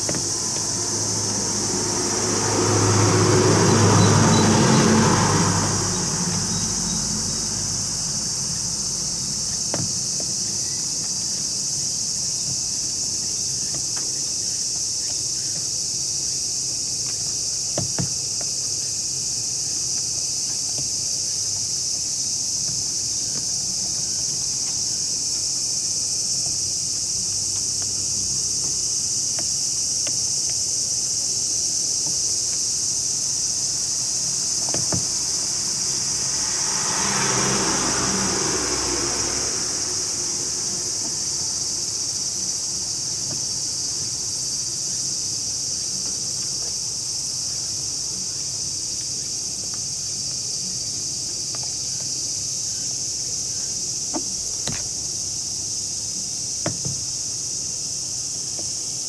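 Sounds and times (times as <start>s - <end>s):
insects shrilling: 26.8s - 48.2s.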